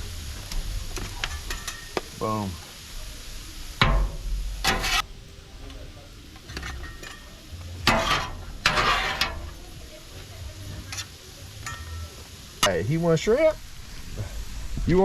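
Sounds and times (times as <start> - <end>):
food sizzling on a griddle: 0.0 - 15.0
metal spatulas scraping griddle: 3.8 - 5.1, 6.4 - 9.6, 10.7 - 12.0.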